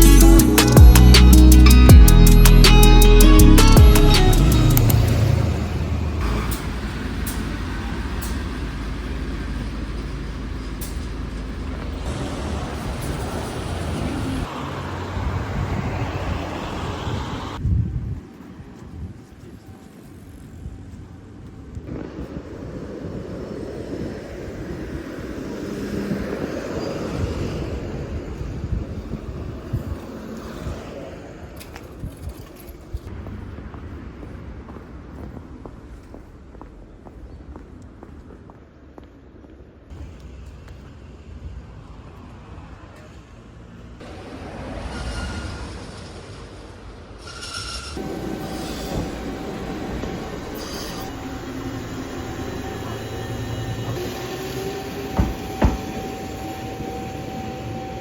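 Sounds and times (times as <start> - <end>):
train rumble and rail noise: 4.3 - 58.0
wheel squeals: 44.7 - 46.2, 47.2 - 58.0
brief high whine: 47.3 - 58.0.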